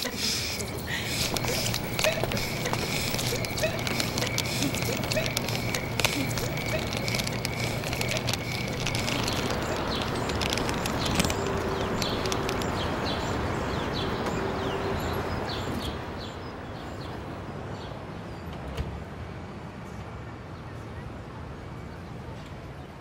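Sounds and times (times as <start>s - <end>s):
distant traffic rush: 0.0s - 23.0s
high bird chirps: 0.2s - 16.4s.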